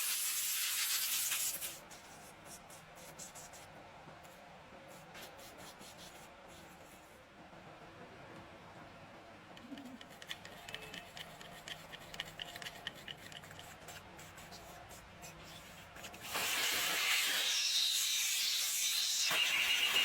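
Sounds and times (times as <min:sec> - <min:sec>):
loud hiss of spraying: 0:00.0 - 0:01.7
clicking and scraping of hand work: 0:09.6 - 0:17.5.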